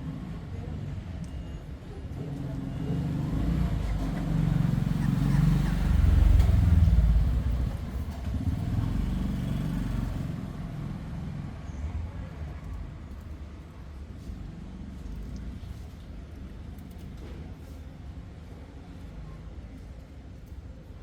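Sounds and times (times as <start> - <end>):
motor vehicle passing: 2.7 - 11.7.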